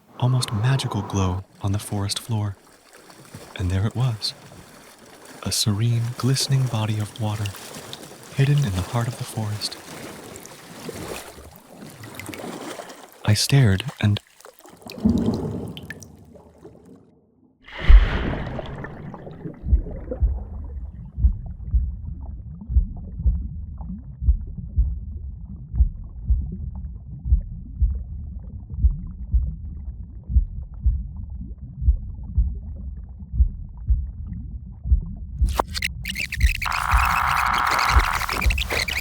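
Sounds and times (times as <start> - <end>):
muffled underwater rumble: 0.0 - 2.6, 3.4 - 9.7, 17.7 - 25.2, 30.3 - 39.0
splash into water: 0.2 - 17.0, 17.7 - 20.3
heartbeat thumps: 17.7 - 39.0.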